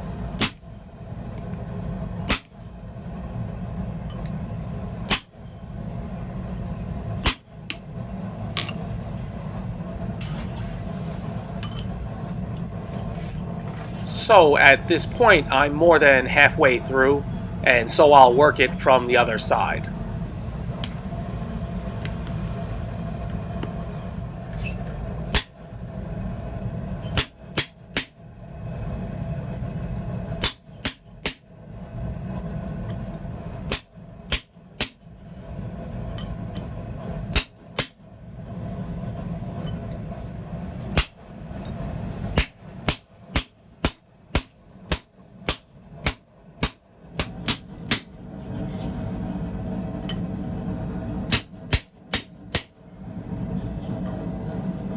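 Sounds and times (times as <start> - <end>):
hammer striking metal chisel: 42.4 - 48.2, 51.3 - 52.8.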